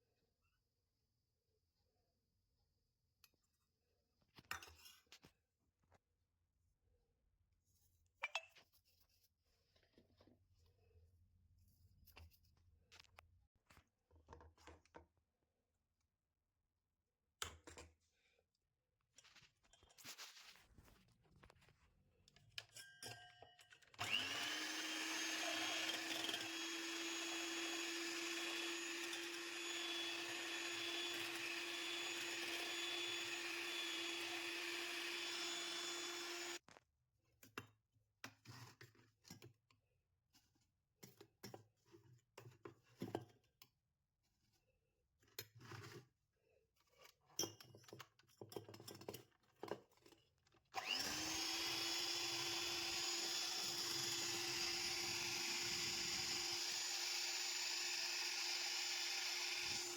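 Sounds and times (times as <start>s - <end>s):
kitchen appliance motor running: 24.0s - 36.6s, 50.8s - 59.9s.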